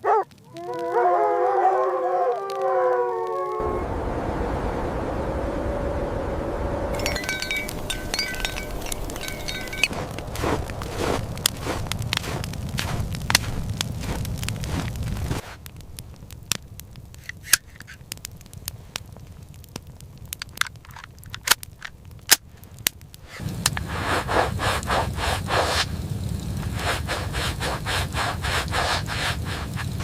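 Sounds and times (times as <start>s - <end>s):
sharp crackles and pops: 0.0s - 5.1s, 6.8s - 30.0s
rhythmic crunching and scraping: 7.0s - 30.0s.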